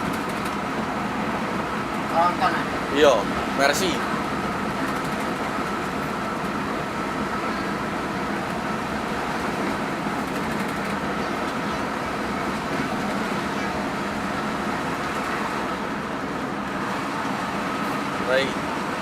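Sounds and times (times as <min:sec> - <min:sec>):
bus engine and road noise: 0:00.0 - 0:19.0.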